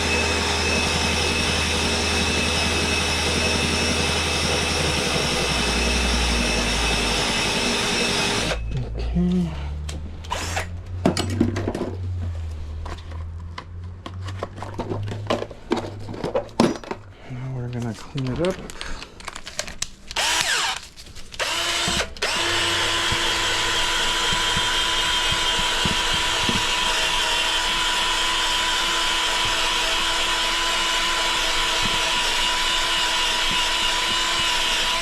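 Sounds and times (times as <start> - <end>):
handheld power tool running: 0.0 - 8.6, 20.1 - 35.0.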